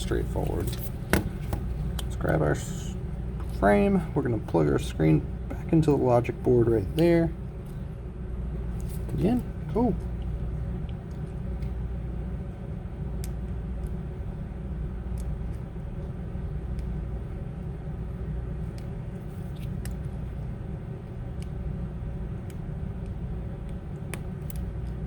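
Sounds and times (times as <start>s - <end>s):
low machinery hum: 0.0s - 25.0s.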